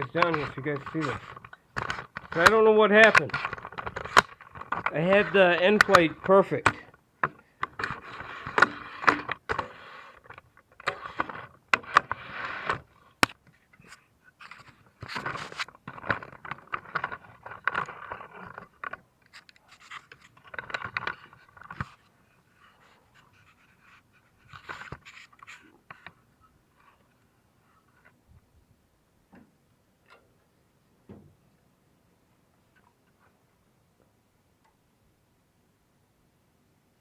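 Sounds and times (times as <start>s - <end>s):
hand tools scraping and knocking: 0.0s - 12.9s.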